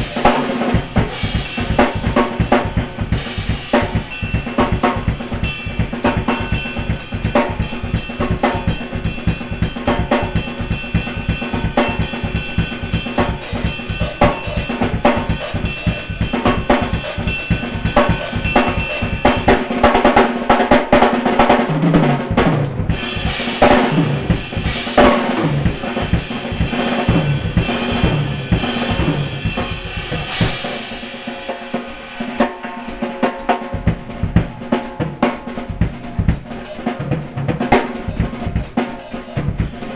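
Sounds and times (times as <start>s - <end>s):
cymbal crashes: 0.0s - 21.0s, 22.2s - 39.9s
bass drum: 21.4s - 30.6s, 33.7s - 39.9s.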